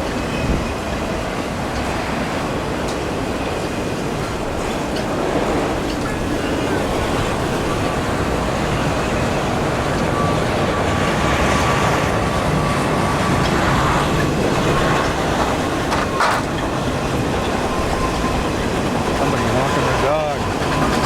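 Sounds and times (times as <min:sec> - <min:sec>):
train wheels rumbling on rail: 0:00.0 - 0:21.0
faint thin whine: 0:04.2 - 0:10.8.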